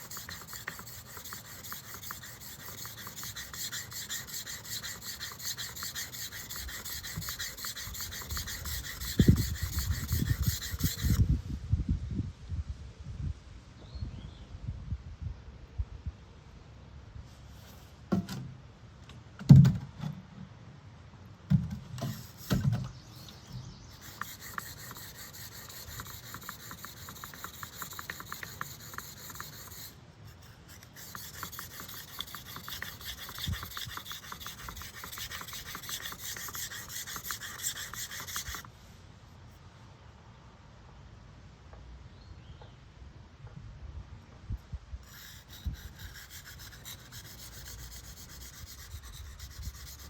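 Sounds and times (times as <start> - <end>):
blade scraping on sharpening stone: 0.0 - 11.2, 23.9 - 29.9, 30.5 - 38.6, 45.1 - 50.0.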